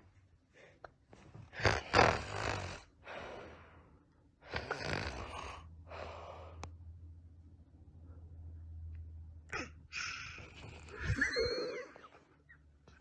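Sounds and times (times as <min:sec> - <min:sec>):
loud rasping snores: 0:01.6 - 0:02.9, 0:04.5 - 0:05.7.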